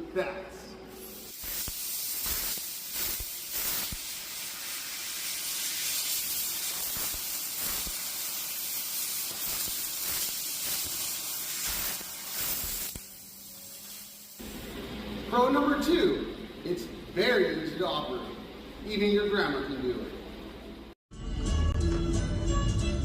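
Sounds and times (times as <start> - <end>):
laser cutting machine hissing: 1.0 - 14.7.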